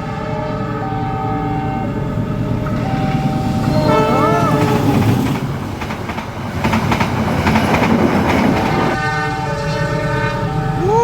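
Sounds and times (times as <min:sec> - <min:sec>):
train horn chord: 0:00.0 - 0:05.1, 0:08.9 - 0:10.8
train wheels clattering over rail joints: 0:02.2 - 0:09.0.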